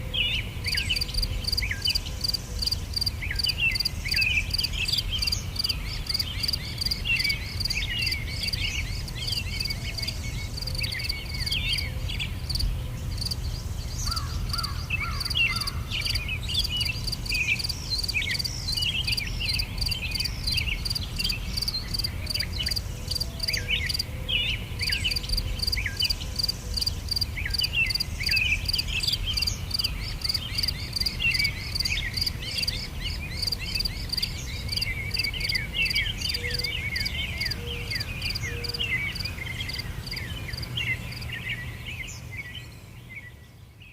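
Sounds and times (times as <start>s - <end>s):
insects chirping: 0.7s - 24.1s, 24.8s - 41.4s.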